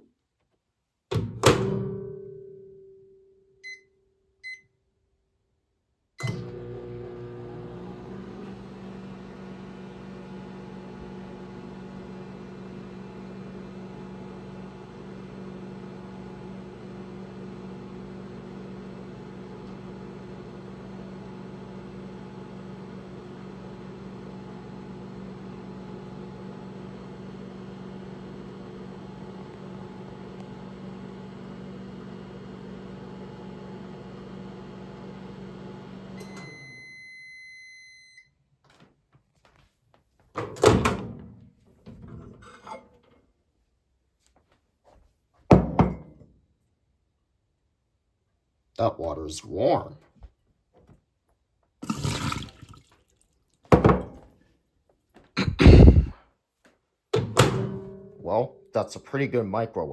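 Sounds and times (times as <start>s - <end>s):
microwave keypad beep: 3.6s - 4.7s, 36.2s - 38.2s
microwave starting click: 6.2s - 13.9s, 57.2s - 58.1s
microwave humming: 6.2s - 37.4s, 55.4s - 56.1s, 57.2s - 58.2s.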